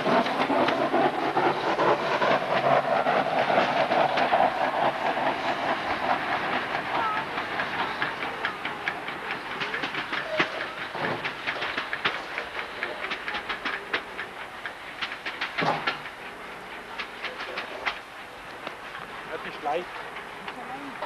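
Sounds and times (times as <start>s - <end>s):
railway wagons rumbling: 0.0s - 21.0s
wheels clicking over rail joints: 0.0s - 21.0s.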